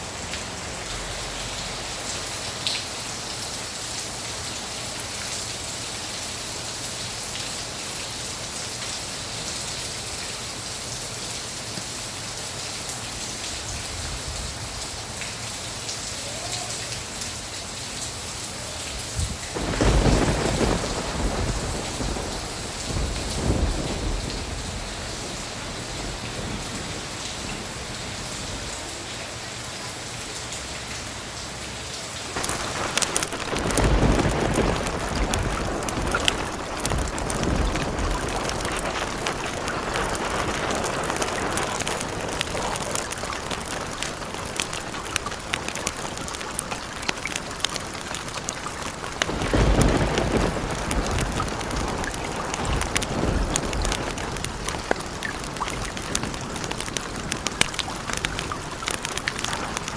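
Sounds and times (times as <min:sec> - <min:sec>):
steady rain falling: 0:00.0 - 0:59.9
thunder rumbling: 0:18.3 - 0:29.6, 0:32.2 - 0:59.9.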